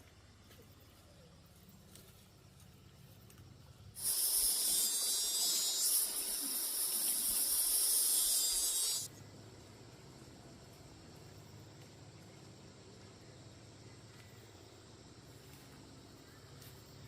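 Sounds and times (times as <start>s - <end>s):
high-pitched hiss: 3.9s - 9.8s.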